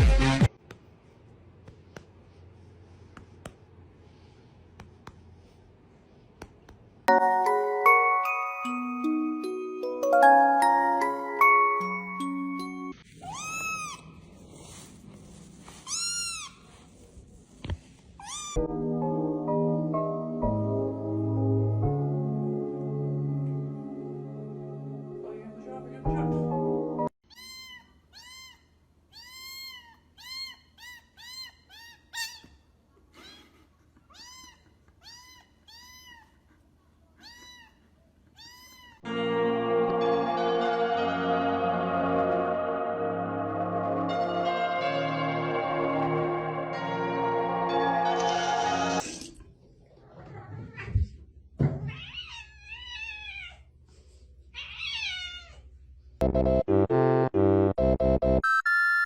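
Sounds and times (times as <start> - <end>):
music: 0.0 - 0.5, 7.1 - 13.0, 18.6 - 27.1, 39.1 - 49.0, 56.2 - 58.4
cat meowing: 13.2 - 14.1, 38.4 - 39.0.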